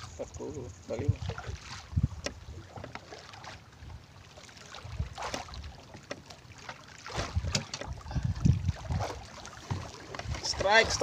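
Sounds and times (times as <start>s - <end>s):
wind buffeting microphone: 0.0s - 2.9s, 7.1s - 11.0s
water sloshing around boat: 0.0s - 11.0s.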